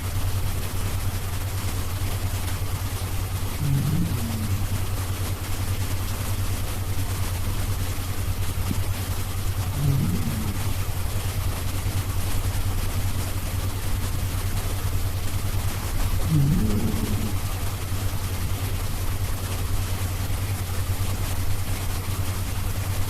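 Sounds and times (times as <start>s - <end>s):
low rattling snoring: 3.1s - 13.4s, 15.6s - 20.0s.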